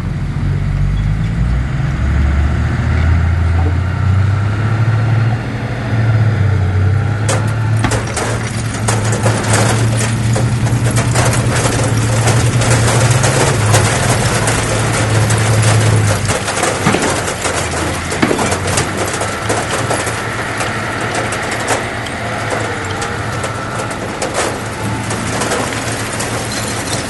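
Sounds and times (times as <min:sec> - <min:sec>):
heavy diesel engine hum: 0:00.0 - 0:27.0
dense crackling and clattering: 0:07.2 - 0:27.0.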